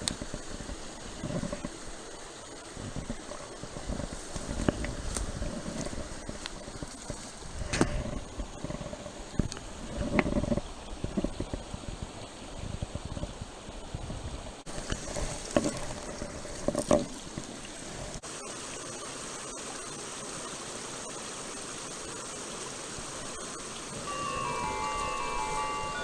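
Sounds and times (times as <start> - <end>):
stream water rushing: 14.7 - 19.6, 20.3 - 26.0.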